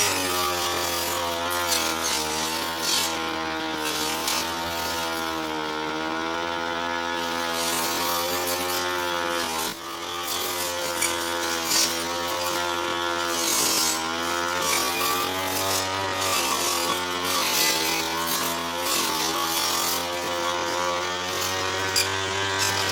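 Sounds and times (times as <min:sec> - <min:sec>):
brush cutter engine cutting grass: 0:00.0 - 0:22.9.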